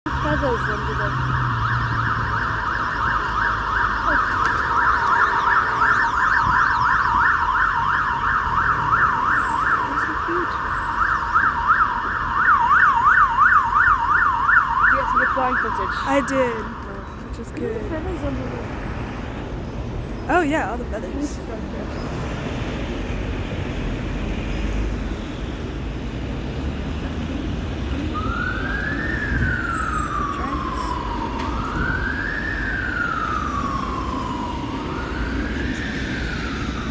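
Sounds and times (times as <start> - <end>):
road traffic rumble: 0.0 - 36.9
emergency siren yelping: 0.1 - 16.9, 27.5 - 36.9.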